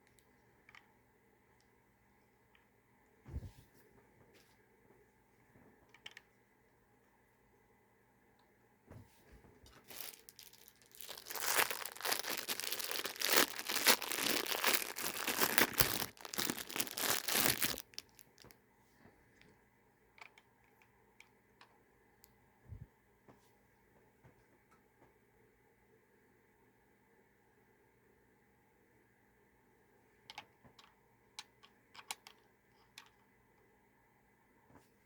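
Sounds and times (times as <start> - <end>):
plastic packaging crumpling: 9.7 - 18.5.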